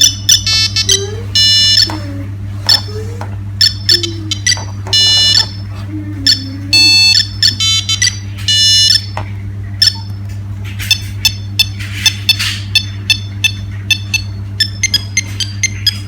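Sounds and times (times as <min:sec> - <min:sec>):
phone ringtone beeping tune: 0:00.0 - 0:01.9, 0:03.6 - 0:05.5, 0:06.3 - 0:09.1, 0:12.3 - 0:16.0.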